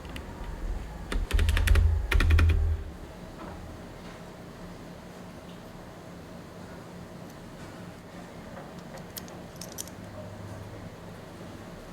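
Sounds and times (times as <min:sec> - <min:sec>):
low hum: 0:00.0 - 0:03.9.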